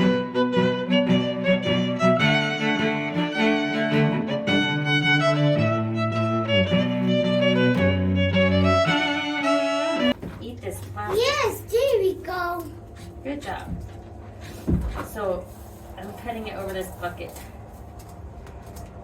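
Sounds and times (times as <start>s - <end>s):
fiddle tune with bass line: 0.0s - 10.2s.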